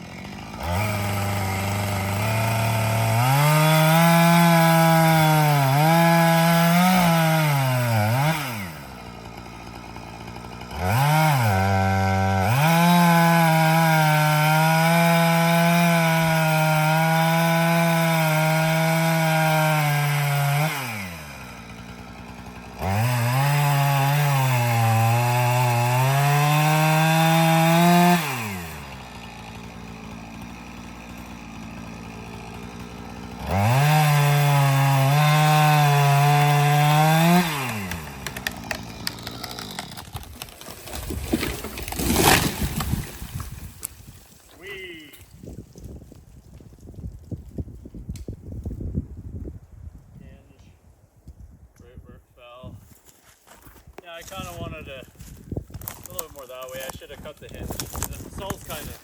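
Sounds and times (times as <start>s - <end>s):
chainsaw cutting wood: 0.0s - 48.9s, 53.1s - 59.0s
person talking: 44.6s - 45.2s, 54.0s - 55.1s, 56.0s - 59.0s.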